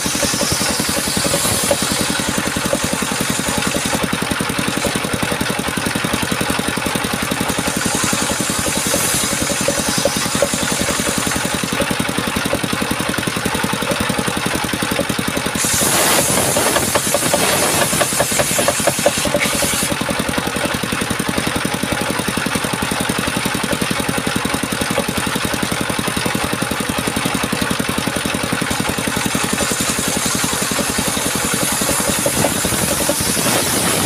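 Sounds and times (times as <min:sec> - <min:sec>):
chainsaw engine running: 0:00.0 - 0:34.0.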